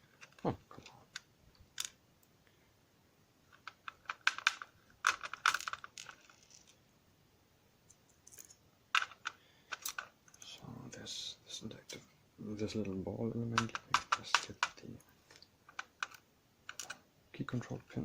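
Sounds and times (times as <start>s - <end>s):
clicks of lock parts: 15.7s - 17.0s.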